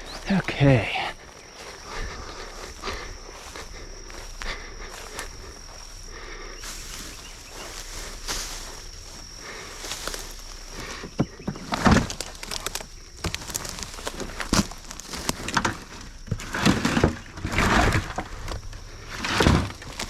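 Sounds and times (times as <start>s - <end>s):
footsteps crunching through dry brush: 0.0s - 20.0s
twigs snapping: 9.2s - 16.8s.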